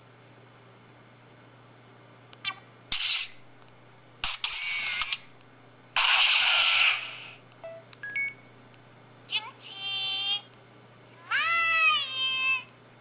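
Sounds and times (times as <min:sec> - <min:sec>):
hissing camera shutter sounds: 0:02.9 - 0:03.4, 0:04.2 - 0:05.3, 0:06.0 - 0:07.4.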